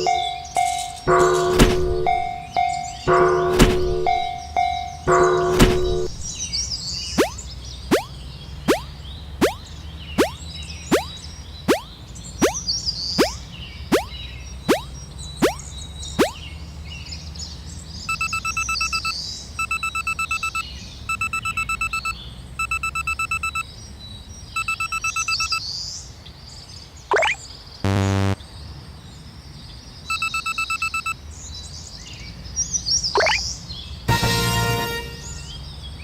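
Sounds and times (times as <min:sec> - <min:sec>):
faint birdsong chirps: 0:06.0 - 0:19.9, 0:23.6 - 0:34.1
fast-pulsing electronic warning beeps: 0:07.2 - 0:08.1, 0:08.7 - 0:12.6, 0:13.2 - 0:14.1, 0:14.7 - 0:16.4, 0:18.1 - 0:23.6, 0:24.6 - 0:25.6, 0:27.1 - 0:28.4
rising electronic swoops: 0:07.2 - 0:08.1, 0:08.7 - 0:12.6, 0:13.2 - 0:16.4, 0:27.1 - 0:28.4
short buzzer blast: 0:27.9 - 0:28.4.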